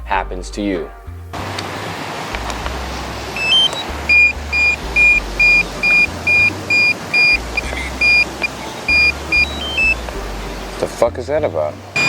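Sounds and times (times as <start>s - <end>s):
remote controller beeping: 3.4s - 10.0s.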